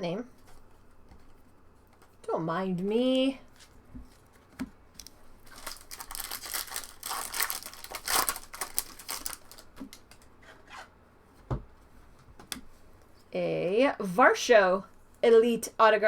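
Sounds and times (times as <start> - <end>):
foil wrapper crinkling and tearing: 5.0 - 10.2.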